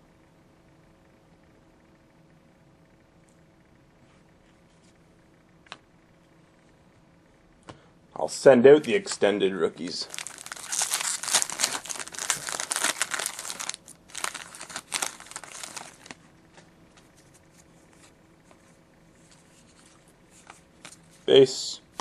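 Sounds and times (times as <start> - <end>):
foil wrapper crinkling and tearing: 10.0 - 16.2
cards being handled: 10.2 - 21.2.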